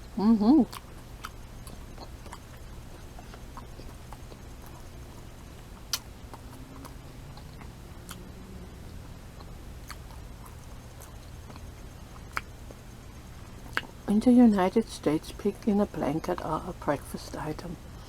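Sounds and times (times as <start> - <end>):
person chewing food: 0.6 - 14.0
wet mouth clicks and lip smacks: 5.9 - 6.1, 13.7 - 14.0.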